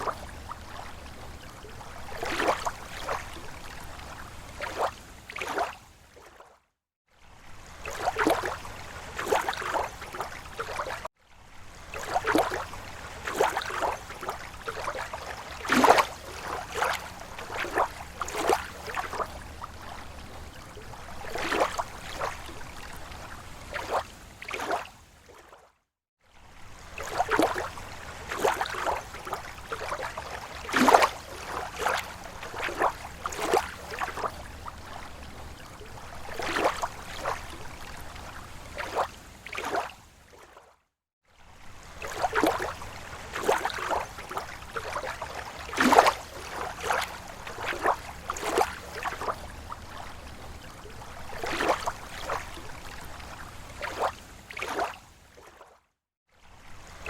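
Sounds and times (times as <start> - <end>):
small waves lapping on shore: 0.0 - 57.0.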